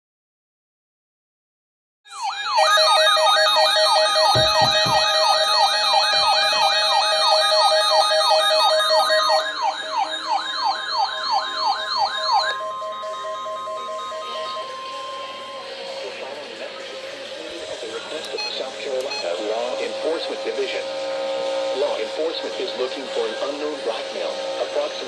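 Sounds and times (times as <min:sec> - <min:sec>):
electronic siren yelping: 0:02.1 - 0:16.1
steady alert tone: 0:02.1 - 0:16.4.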